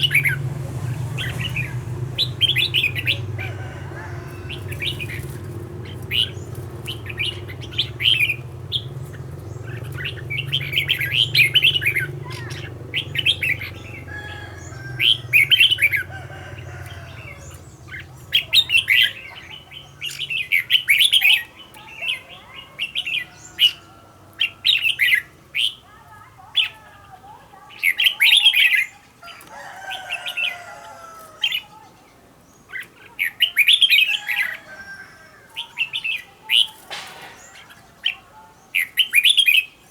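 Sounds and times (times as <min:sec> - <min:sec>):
wing flutters: 0:00.0 - 0:18.9
bird singing rapid phrases: 0:00.0 - 0:39.9.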